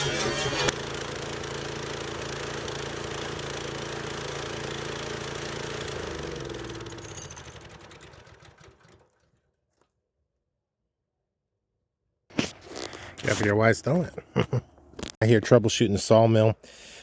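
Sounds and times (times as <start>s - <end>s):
band wheels spinning down: 0.0s - 1.2s, 5.5s - 9.5s
small gas engine humming: 0.0s - 9.3s.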